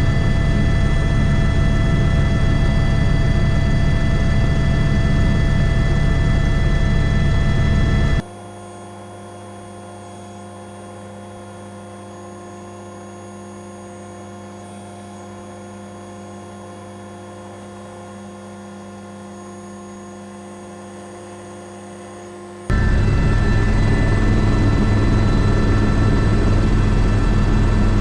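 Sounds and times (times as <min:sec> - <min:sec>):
muffled helicopter hum: 0:00.0 - 0:08.2, 0:22.7 - 0:28.0.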